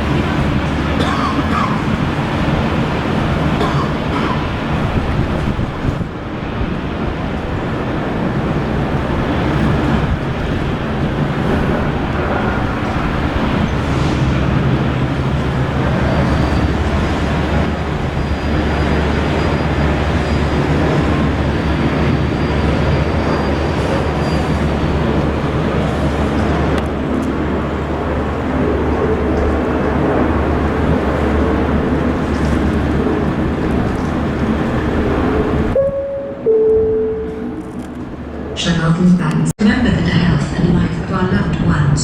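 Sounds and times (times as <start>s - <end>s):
engine rumbling: 0.0s - 39.4s
low hum: 33.9s - 39.5s
faint high whine: 35.8s - 38.0s.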